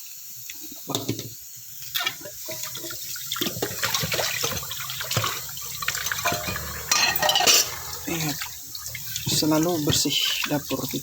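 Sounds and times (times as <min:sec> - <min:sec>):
tap water running into sink: 0:01.0 - 0:11.0.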